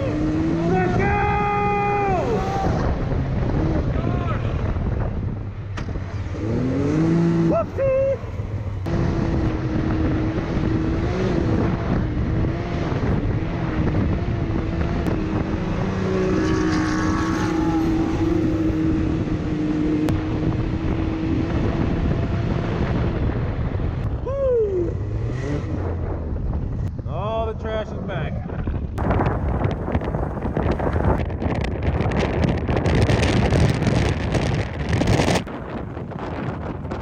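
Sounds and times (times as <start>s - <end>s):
wind noise on microphone: 0.0s - 37.0s
vehicle engine running: 29.0s - 37.0s.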